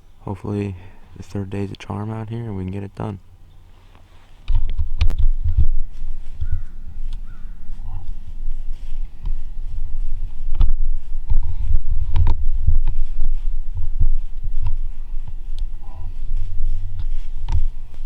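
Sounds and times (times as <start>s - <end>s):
wind buffeting microphone: 4.4s - 18.0s
faint bird calls: 5.3s - 12.0s, 13.0s - 18.0s.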